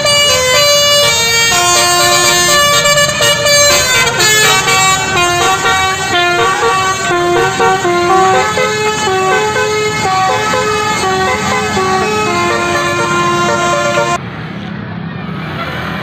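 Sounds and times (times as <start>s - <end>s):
bus horn playing a melody: 0.0s - 14.2s.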